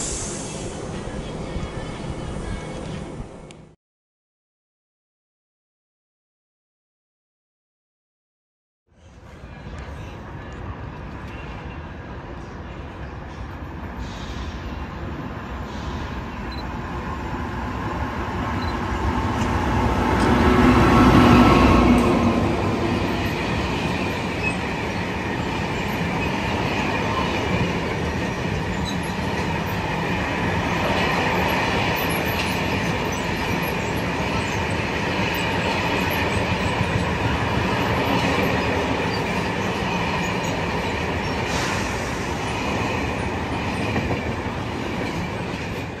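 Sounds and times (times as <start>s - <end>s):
freight train passing: 0.0s - 3.6s, 9.0s - 46.0s
wheels squealing: 22.9s - 42.2s.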